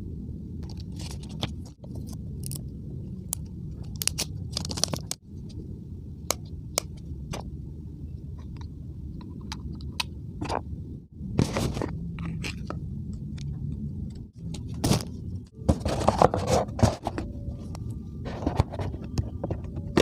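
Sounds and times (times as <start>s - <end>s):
steady low rumble: 0.0s - 20.0s
rustling and scraping: 0.7s - 2.6s, 11.3s - 12.8s, 14.4s - 20.0s.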